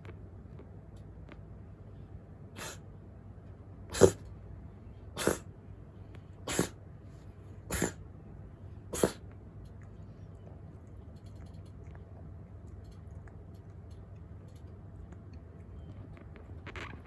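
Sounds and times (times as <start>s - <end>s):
cat sneezing: 2.6s - 2.8s, 3.9s - 4.3s, 5.1s - 5.5s, 6.4s - 6.8s, 7.6s - 8.0s, 8.9s - 9.2s.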